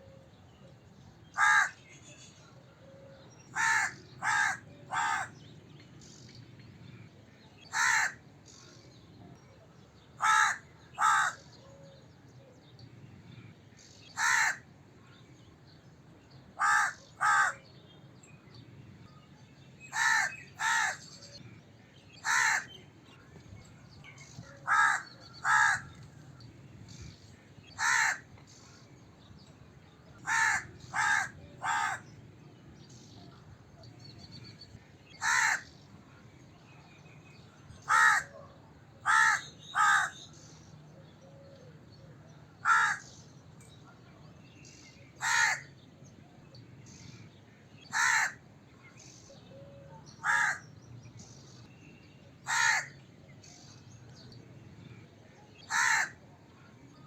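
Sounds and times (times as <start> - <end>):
crow cawing: 1.4 - 1.8, 3.6 - 5.3, 7.7 - 8.2, 10.2 - 11.5, 14.2 - 14.6, 16.6 - 17.6, 19.9 - 21.0, 22.2 - 22.7, 24.6 - 26.0, 27.8 - 28.3, 30.2 - 32.1, 35.2 - 35.7, 37.9 - 38.3, 39.0 - 40.2, 42.6 - 43.1, 45.2 - 45.7, 47.9 - 48.4, 50.2 - 50.6, 52.5 - 53.0, 55.7 - 56.2.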